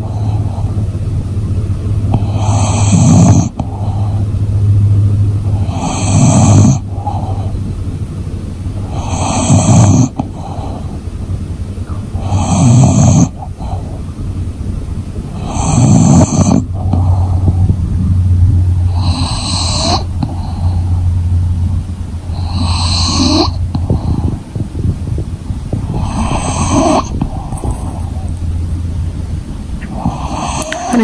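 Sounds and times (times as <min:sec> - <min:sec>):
low breathing rumble: 0:00.0 - 0:31.0
dog snoring with whistling edge: 0:02.1 - 0:03.6, 0:05.6 - 0:07.6, 0:08.9 - 0:10.7, 0:12.2 - 0:13.8, 0:15.4 - 0:17.2, 0:18.9 - 0:20.9, 0:22.3 - 0:24.2, 0:25.9 - 0:28.3, 0:29.9 - 0:31.0.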